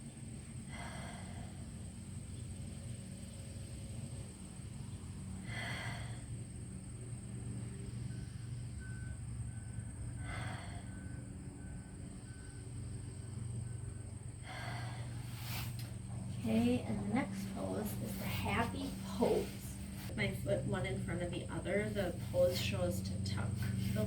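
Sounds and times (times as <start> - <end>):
steady low hum: 0.0 - 24.0
person exhaling deeply: 5.4 - 6.3, 10.2 - 11.0, 14.4 - 20.1.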